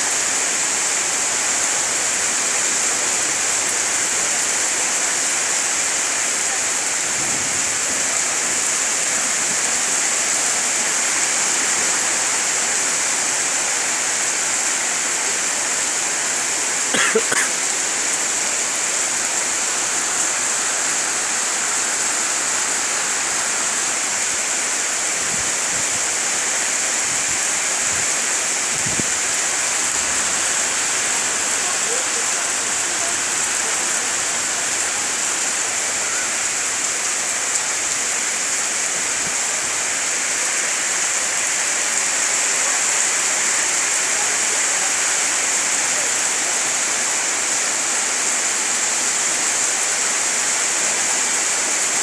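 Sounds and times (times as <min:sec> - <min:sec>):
heavy rain pouring: 0:00.0 - 0:52.0.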